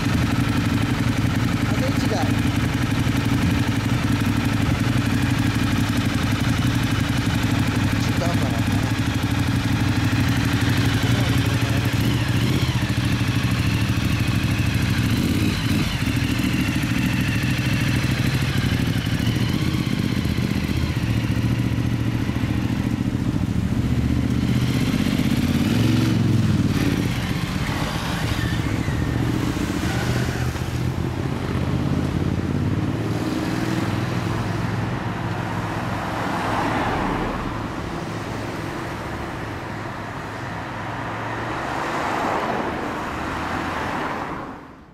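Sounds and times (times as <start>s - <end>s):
motorcycle engine running: 0.0s - 35.4s.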